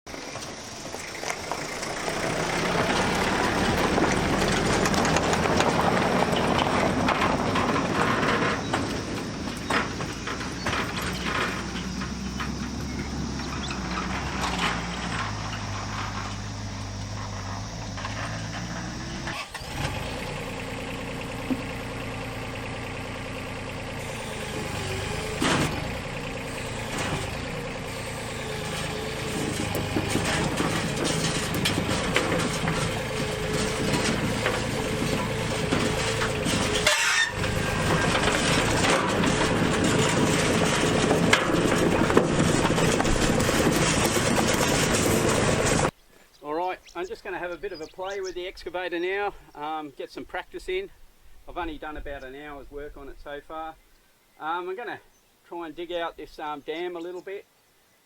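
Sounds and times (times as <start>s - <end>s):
excavator diesel engine running: 0.1s - 46.0s.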